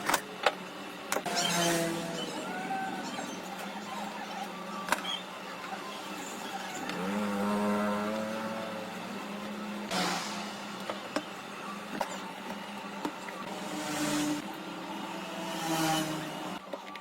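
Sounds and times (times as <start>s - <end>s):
small motor humming: 1.1s - 16.7s.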